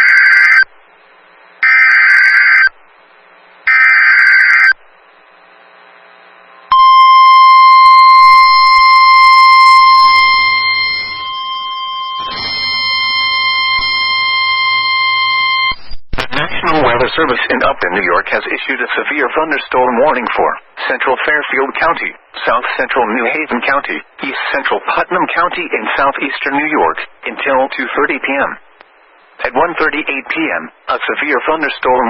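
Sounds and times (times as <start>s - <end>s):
steady alert tone: 6.7s - 14.5s
screeching data bursts: 8.0s - 14.8s.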